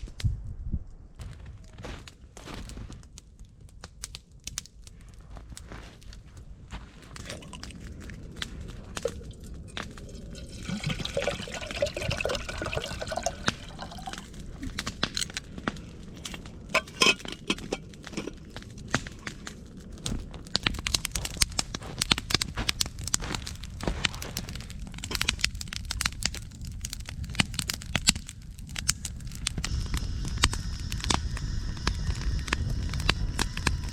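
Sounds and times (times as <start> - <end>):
campfire crackling: 1.0 - 33.9
liquid being poured: 7.2 - 15.4, 16.2 - 18.6.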